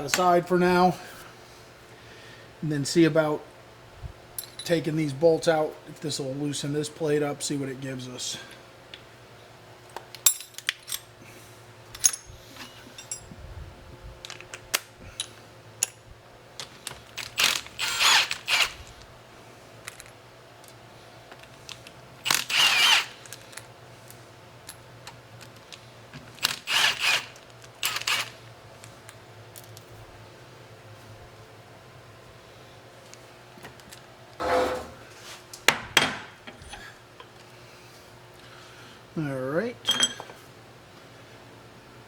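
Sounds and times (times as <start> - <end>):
cordless power driver whirring: 22.2 - 23.2, 26.4 - 28.3.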